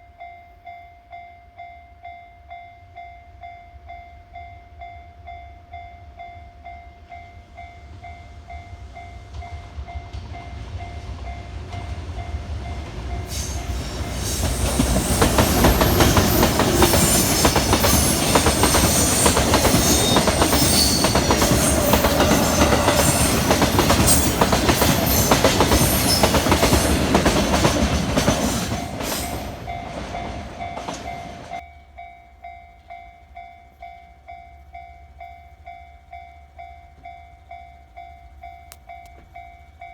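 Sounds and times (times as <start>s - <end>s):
level-crossing warning bell: 0.0s - 39.9s
freight train passing: 3.8s - 39.9s
train wheels clattering: 9.3s - 31.6s.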